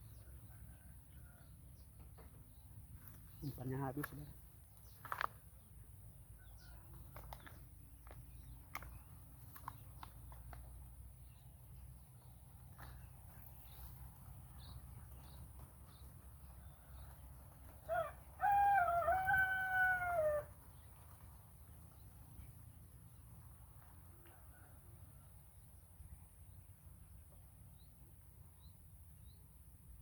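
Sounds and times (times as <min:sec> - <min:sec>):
rooster crowing: 0:17.8 - 0:20.5.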